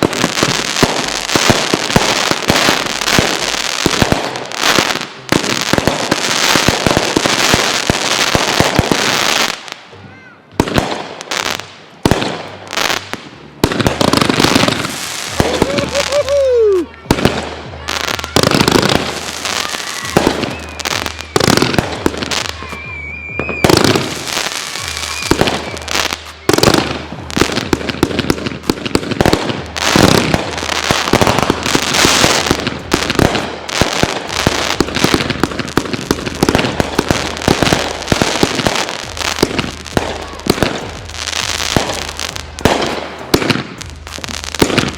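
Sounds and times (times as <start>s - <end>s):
fireworks bangs and crackling: 0.0s - 44.9s
falling firework whistle: 18.1s - 27.0s.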